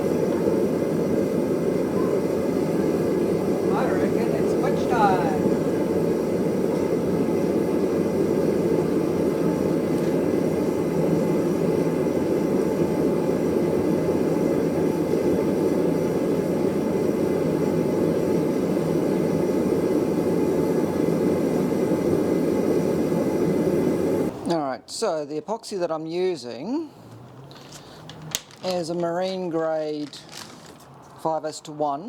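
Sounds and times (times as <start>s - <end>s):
forge roaring: 0.0s - 11.6s.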